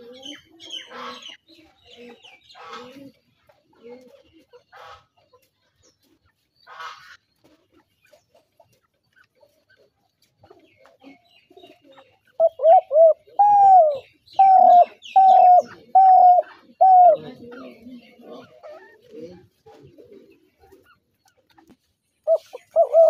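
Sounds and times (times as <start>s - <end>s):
dove cooing: 0.0s - 1.2s, 1.9s - 4.9s, 10.6s - 21.1s, 22.2s - 23.0s.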